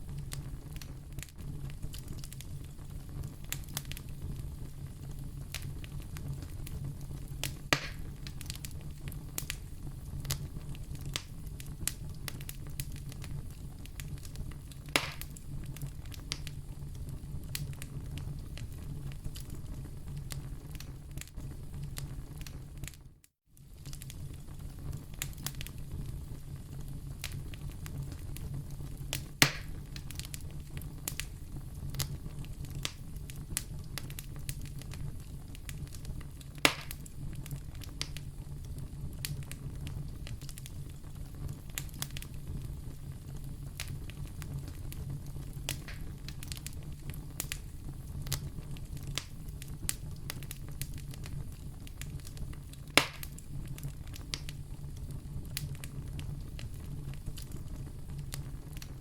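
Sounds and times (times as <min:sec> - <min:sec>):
wood fire crackling: 0:00.0 - 0:59.0
sharp loud fire pops: 0:07.7 - 0:08.2, 0:14.9 - 0:15.3, 0:29.4 - 0:29.8, 0:36.6 - 0:37.0, 0:53.0 - 0:53.4.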